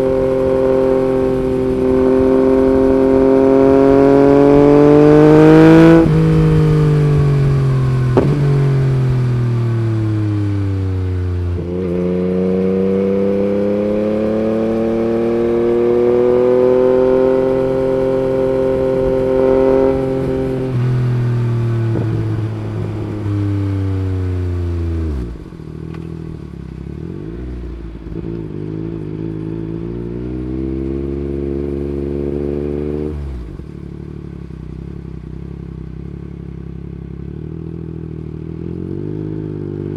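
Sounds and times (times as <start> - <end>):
motorcycle engine: 0.0 - 39.9
exhaust pop: 4.6 - 10.2.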